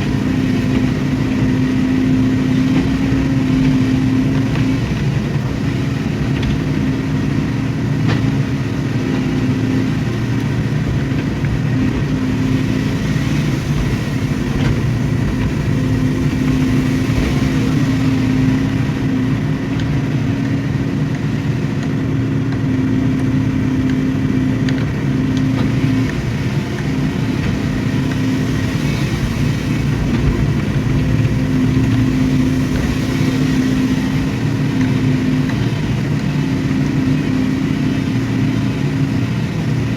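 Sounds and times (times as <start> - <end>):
diesel engine hum: 0.0 - 39.9.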